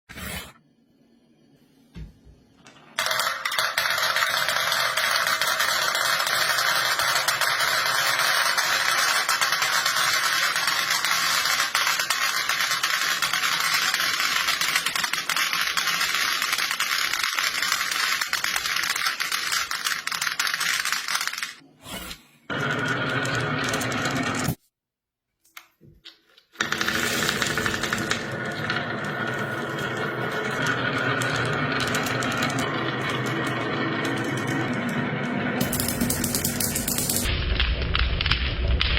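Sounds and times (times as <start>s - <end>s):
marbles clattering on plastic track: 2.6s - 21.6s, 26.4s - 38.9s.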